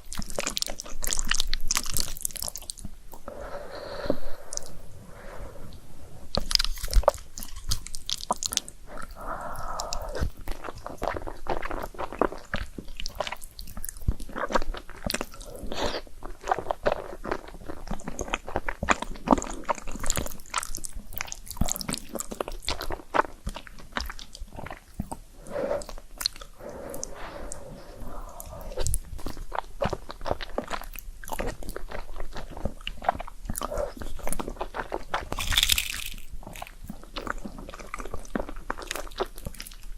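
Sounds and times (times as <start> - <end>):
wet chewing of noodles: 0.0 - 39.9.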